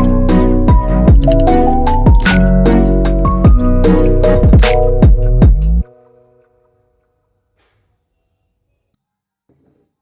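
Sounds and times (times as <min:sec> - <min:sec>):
music with steady beat: 0:00.0 - 0:06.8.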